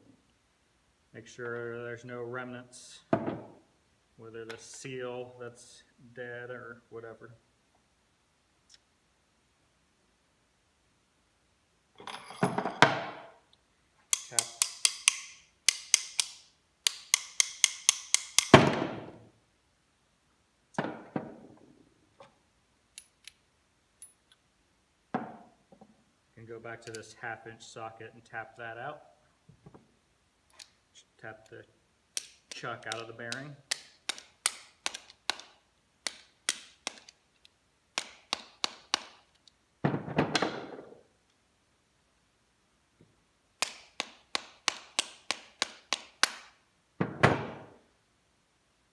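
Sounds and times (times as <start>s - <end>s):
sharp taps on metal socket: 14.1s - 18.5s.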